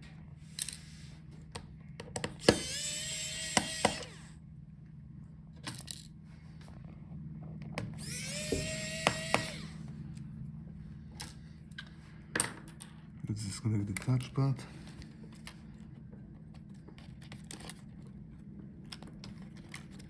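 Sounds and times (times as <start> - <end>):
electric screwdriver motor whine: 2.4 - 4.4, 8.0 - 9.9.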